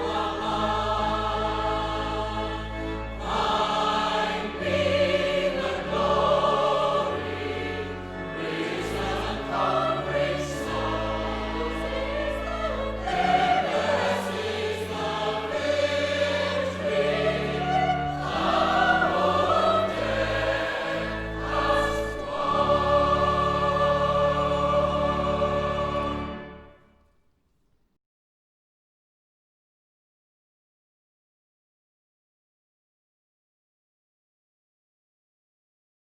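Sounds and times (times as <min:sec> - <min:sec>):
choir singing with accompaniment: 0:00.0 - 0:27.0.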